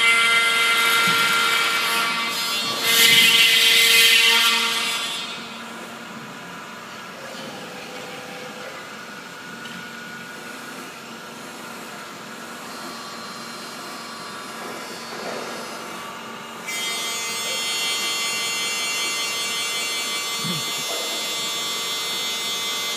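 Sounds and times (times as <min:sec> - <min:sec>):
machine hum: 0:20.2 - 0:21.0.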